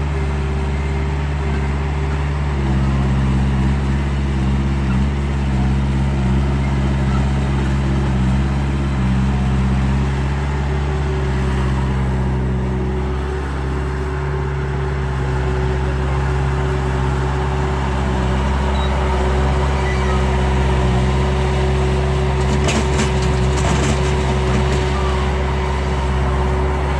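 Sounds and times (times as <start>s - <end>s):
low engine-like drone: 0.0s - 26.9s.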